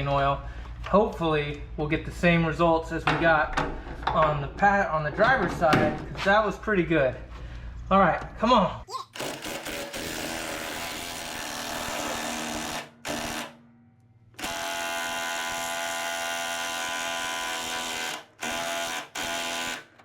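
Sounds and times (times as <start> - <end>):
impact wrench running: 9.2 - 13.6, 14.4 - 19.9.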